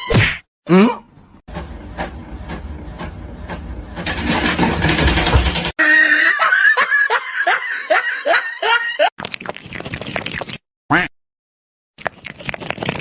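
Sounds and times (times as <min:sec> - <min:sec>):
person laughing: 0:05.8 - 0:09.1.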